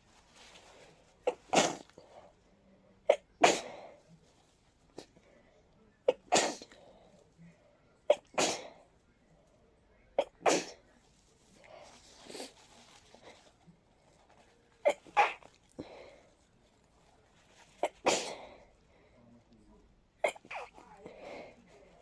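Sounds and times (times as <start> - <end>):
person sneezing: 1.2 - 1.9, 3.1 - 3.9, 6.1 - 6.7, 8.1 - 8.8, 10.2 - 10.8, 14.8 - 15.5, 17.8 - 18.5, 20.2 - 21.5.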